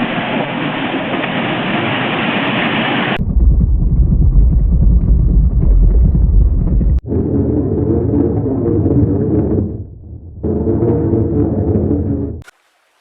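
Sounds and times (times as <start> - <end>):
rushing floodwater: 0.0 - 3.2
deep rumble of torrent: 0.0 - 12.4.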